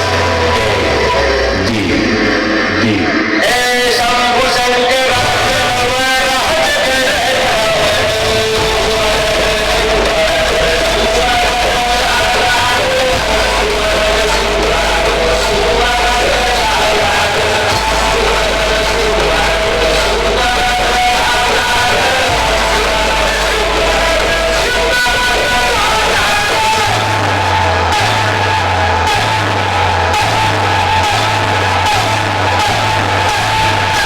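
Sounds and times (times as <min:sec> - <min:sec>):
loud music with heavy bass: 0:00.0 - 0:34.0
sung melody: 0:07.2 - 0:31.2.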